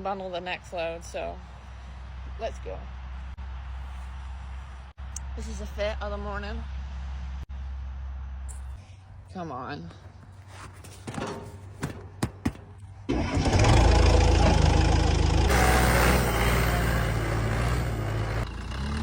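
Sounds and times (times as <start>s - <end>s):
tractor engine running: 10.9s - 19.0s.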